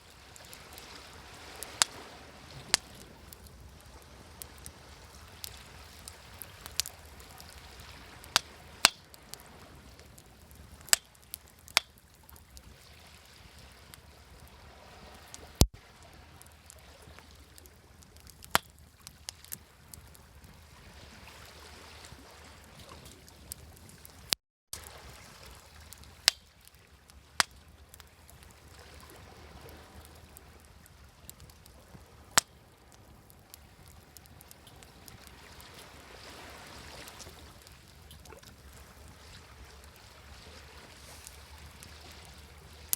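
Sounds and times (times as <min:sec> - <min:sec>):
wood fire crackling and popping: 0:00.0 - 0:20.6, 0:22.8 - 0:24.9, 0:25.7 - 0:36.0
sea waves: 0:00.0 - 0:42.9.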